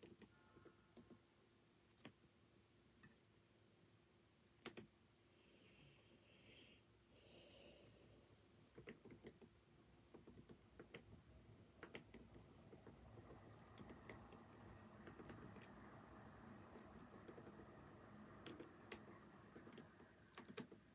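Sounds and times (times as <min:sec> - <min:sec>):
keyboard typing: 0:00.0 - 0:01.2, 0:08.7 - 0:15.8, 0:16.4 - 0:20.9.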